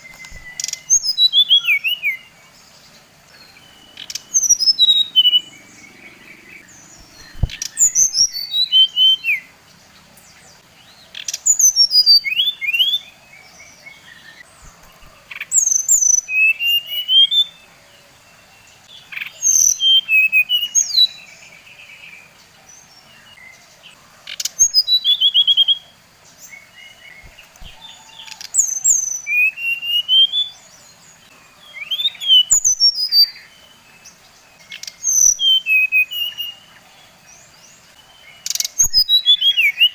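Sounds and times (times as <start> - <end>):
songbird whistling: 0.0 - 2.3, 3.4 - 9.5, 11.2 - 13.1, 13.9 - 17.7, 19.1 - 21.3, 24.4 - 25.9, 26.6 - 30.7, 31.6 - 33.8, 34.7 - 36.7, 38.0 - 39.9.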